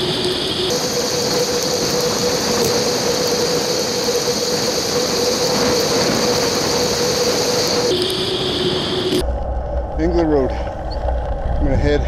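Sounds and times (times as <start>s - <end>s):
wind noise on microphone: 0.0s - 12.0s.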